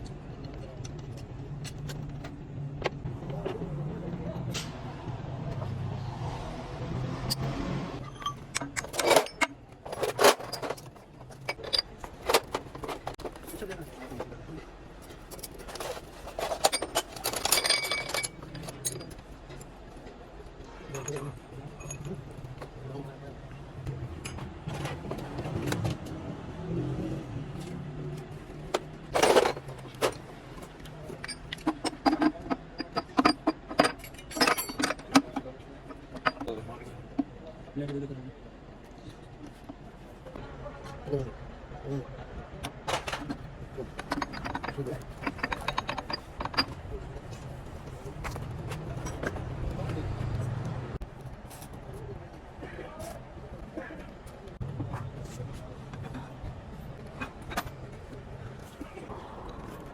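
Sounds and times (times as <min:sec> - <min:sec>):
metal tools clinking: 0:07.3 - 0:14.2, 0:15.0 - 0:19.6, 0:28.7 - 0:36.6, 0:42.9 - 0:49.9.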